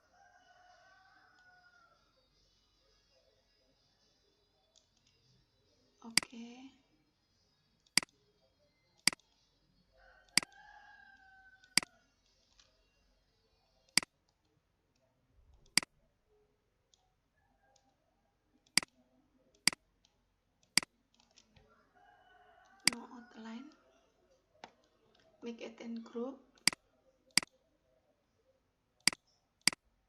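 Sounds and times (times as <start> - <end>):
computer mouse clicking: 10.3 - 10.6, 15.5 - 15.9, 18.6 - 21.6, 22.7 - 23.0, 26.6 - 27.6.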